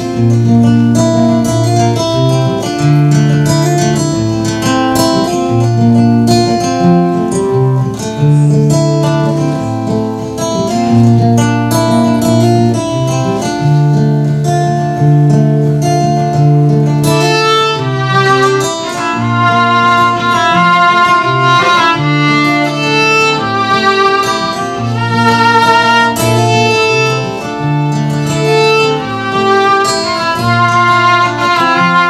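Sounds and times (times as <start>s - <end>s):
acoustic guitar picking: 0.0s - 32.0s
fiddle long held notes: 16.4s - 32.0s.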